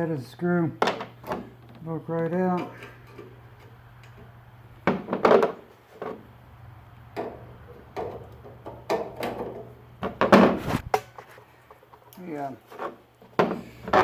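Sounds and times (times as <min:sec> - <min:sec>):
steady low hum: 0:09.7 - 0:11.2.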